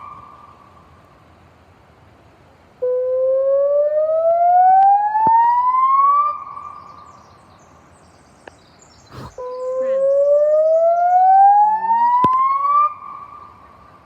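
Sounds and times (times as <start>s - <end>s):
warning siren rising tone: 2.8s - 6.5s, 9.4s - 13.3s.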